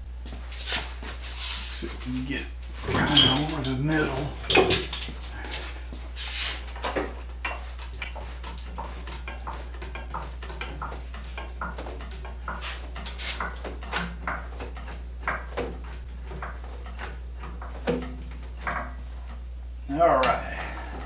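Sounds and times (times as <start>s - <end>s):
steady low hum: 0.0s - 21.0s
metallic clicks and clanks of tools: 2.9s - 5.2s, 6.7s - 19.4s.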